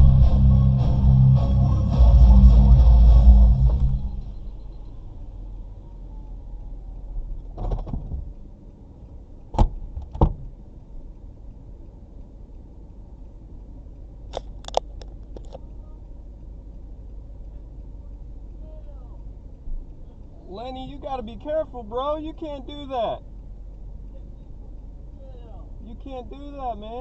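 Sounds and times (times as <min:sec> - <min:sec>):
car road and engine rumble: 0:00.0 - 0:27.0
sharp clicks: 0:06.2 - 0:18.6.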